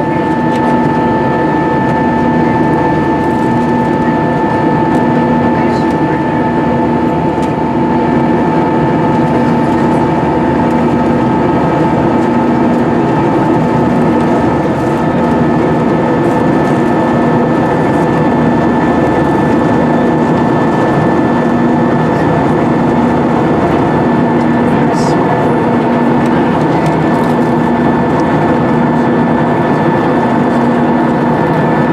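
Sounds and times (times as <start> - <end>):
constant whine: 0.0 - 31.9
jet engine and airflow noise: 0.0 - 31.9
wavering low hum: 0.0 - 31.9.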